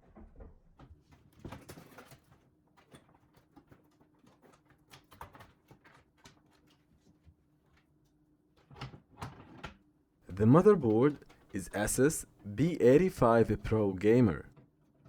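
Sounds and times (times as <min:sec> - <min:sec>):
faint steady hum: 0:10.3 - 0:14.4.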